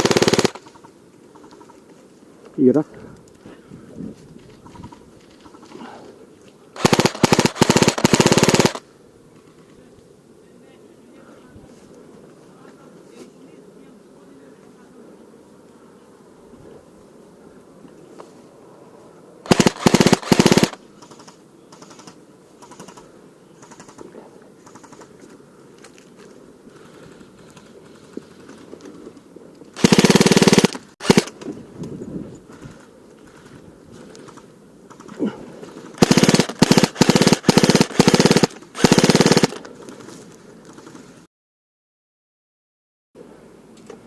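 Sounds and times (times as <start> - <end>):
airsoft rifle firing bursts: 0.0 - 0.8, 6.8 - 8.8, 19.5 - 23.0, 23.6 - 25.1, 29.8 - 31.4, 35.8 - 39.6
distant airsoft fire: 0.0 - 0.8, 6.8 - 8.8, 19.5 - 23.0, 29.8 - 31.5, 34.2 - 39.7.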